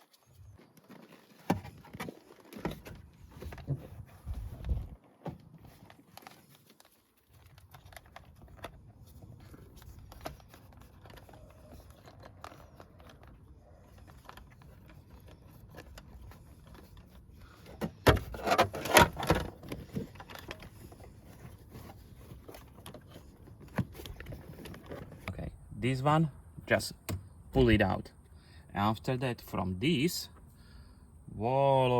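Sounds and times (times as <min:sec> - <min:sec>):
sharp clicks and scraping: 0:00.0 - 0:25.6.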